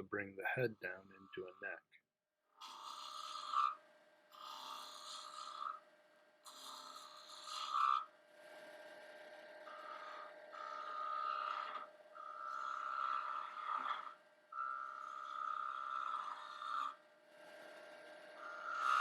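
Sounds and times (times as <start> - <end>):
wood lathe humming: 9.5 - 19.0
turning tool scraping wood: 9.7 - 17.0.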